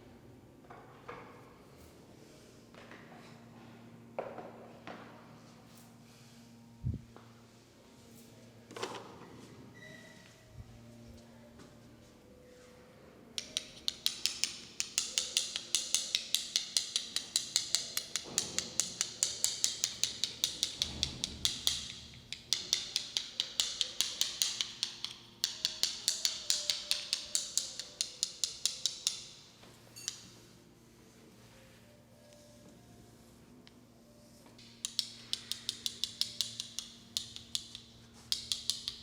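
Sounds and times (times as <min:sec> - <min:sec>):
rapid rhythmic clicking with hiss: 0:13.4 - 0:29.5, 0:34.6 - 0:39.0.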